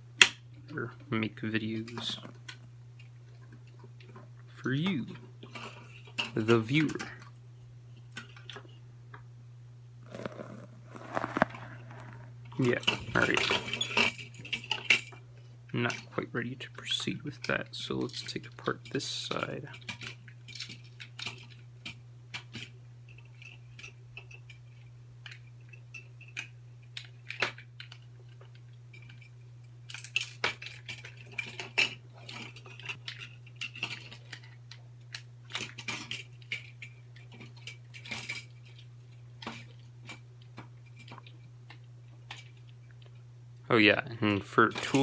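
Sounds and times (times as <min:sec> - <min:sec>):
hand tools clicking and scraping plastic: 0:10.0 - 0:14.0.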